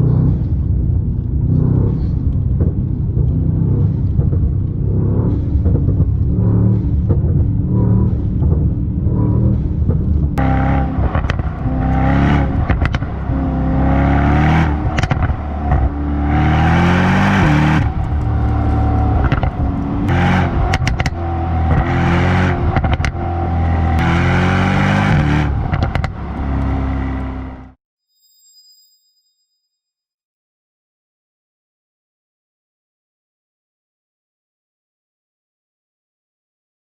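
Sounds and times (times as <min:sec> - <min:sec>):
car engine accelerating through gears: 0:00.0 - 0:27.8
exhaust cracks: 0:00.0 - 0:27.8.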